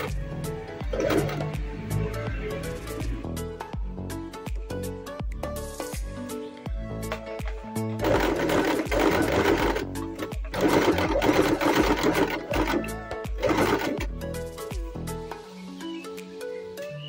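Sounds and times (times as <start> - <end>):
background music: 0.0 - 17.0
sewing machine stitching: 0.9 - 1.6, 8.0 - 14.1.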